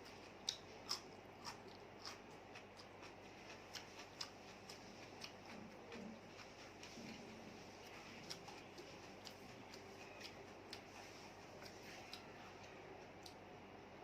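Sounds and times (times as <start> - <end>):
eating clicks and smacks: 0.3 - 7.2.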